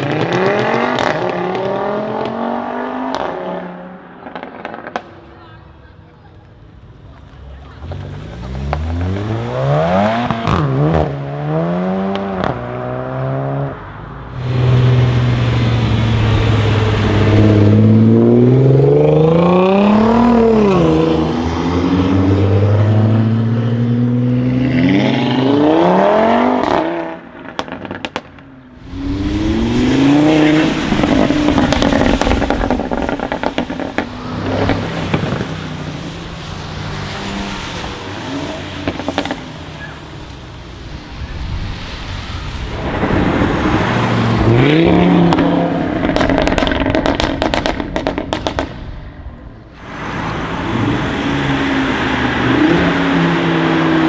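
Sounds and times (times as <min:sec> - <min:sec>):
car engine revving: 0:00.0 - 0:54.0
exhaust pops: 0:04.0 - 0:11.4, 0:12.0 - 0:13.0, 0:26.2 - 0:54.0.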